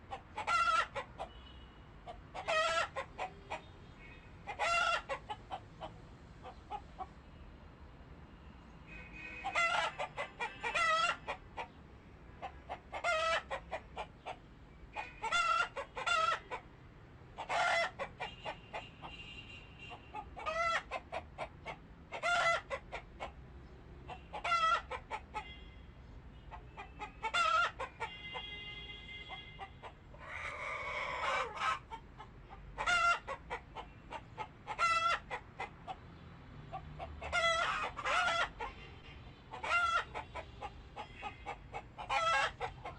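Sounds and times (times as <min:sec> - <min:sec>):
chickens cackling: 0:00.0 - 0:01.4, 0:02.0 - 0:03.6, 0:04.4 - 0:07.1, 0:09.4 - 0:11.8, 0:12.4 - 0:16.7, 0:17.4 - 0:18.9, 0:19.9 - 0:23.4, 0:24.1 - 0:25.5, 0:26.5 - 0:28.4, 0:29.3 - 0:36.1, 0:36.7 - 0:38.9, 0:39.5 - 0:42.9.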